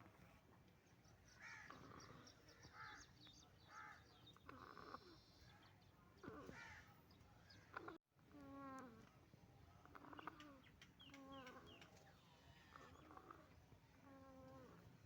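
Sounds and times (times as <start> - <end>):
chicken snoring: 4.4 - 5.2, 12.6 - 15.0.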